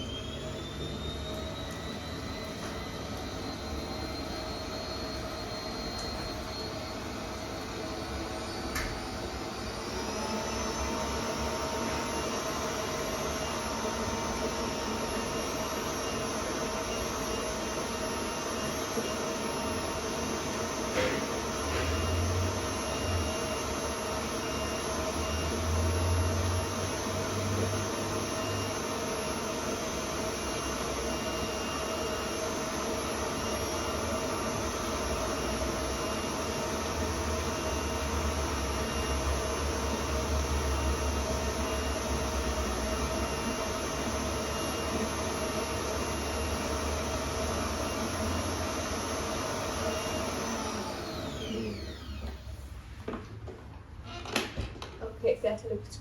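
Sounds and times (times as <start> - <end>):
stand mixer whisking: 34.6 - 52.5.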